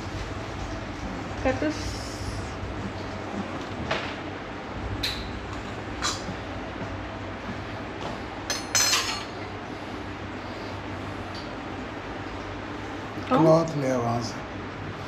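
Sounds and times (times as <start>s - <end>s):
steady low hum: 0.0s - 15.0s
utensils and dishes clinking: 5.0s - 6.4s, 8.5s - 9.5s.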